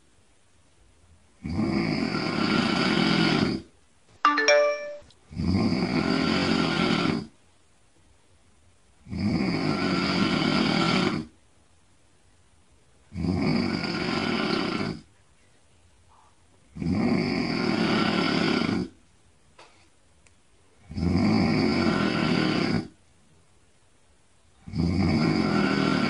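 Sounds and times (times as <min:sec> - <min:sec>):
brief ringing chime: 0:04.3 - 0:05.1
person snoring: 0:09.1 - 0:11.3, 0:16.8 - 0:19.0, 0:20.9 - 0:22.9, 0:24.7 - 0:26.0.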